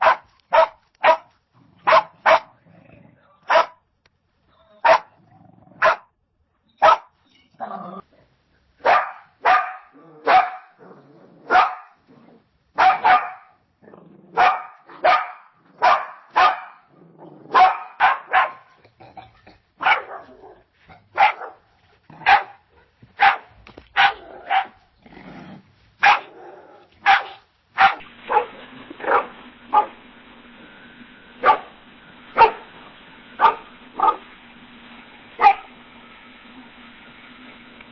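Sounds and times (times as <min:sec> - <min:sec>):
dog barking: 0:00.0 - 0:02.5, 0:03.5 - 0:03.8, 0:04.8 - 0:05.2, 0:05.8 - 0:06.1, 0:06.8 - 0:07.2, 0:08.8 - 0:10.8, 0:11.4 - 0:12.0, 0:12.8 - 0:13.6, 0:14.3 - 0:16.9, 0:17.5 - 0:18.8, 0:19.8 - 0:24.8, 0:26.0 - 0:26.4, 0:27.0 - 0:30.0, 0:31.4 - 0:32.7, 0:33.4 - 0:34.3, 0:35.4 - 0:35.8.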